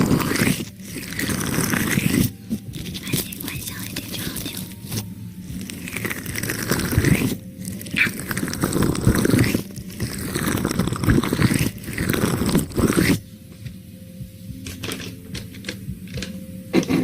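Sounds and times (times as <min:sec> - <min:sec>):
sticky crackling with clicks: 0:00.0 - 0:13.2.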